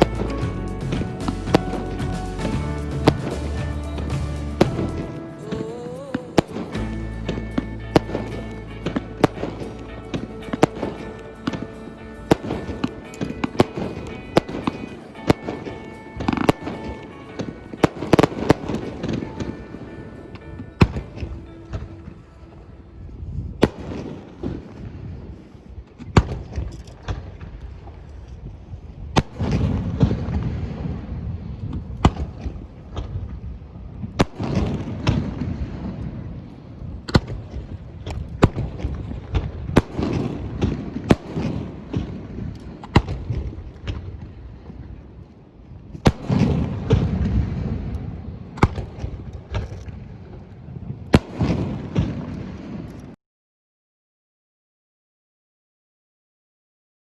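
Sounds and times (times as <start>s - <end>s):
fireworks bangs and crackling: 0.0s - 21.3s, 29.0s - 52.9s.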